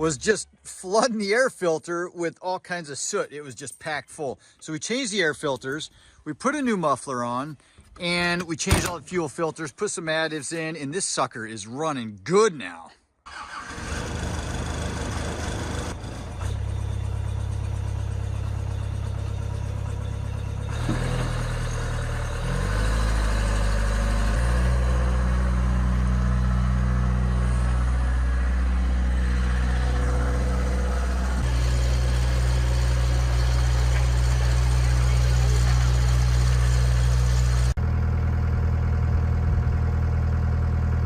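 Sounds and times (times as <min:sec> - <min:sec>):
diesel engine running: 0:13.3 - 0:41.0.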